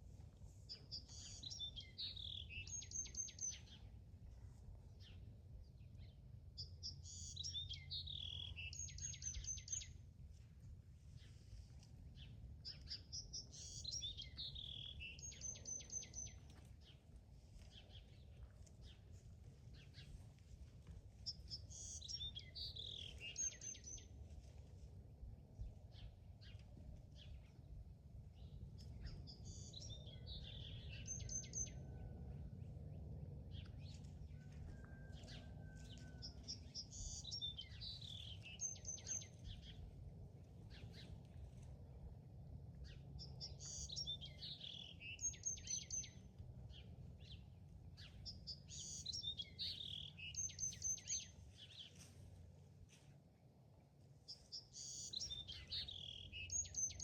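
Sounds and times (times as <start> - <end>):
songbird singing: 0.0 - 10.1, 11.2 - 24.3, 25.6 - 52.6, 53.6 - 57.0
steady low rumble: 0.0 - 56.8.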